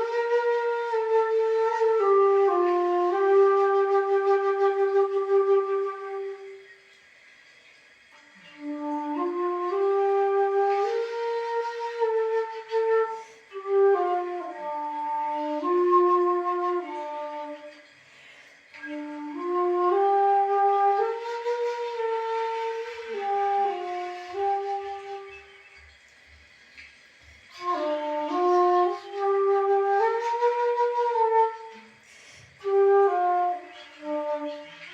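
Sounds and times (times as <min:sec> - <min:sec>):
bamboo flute melody: 0:00.0 - 0:34.9.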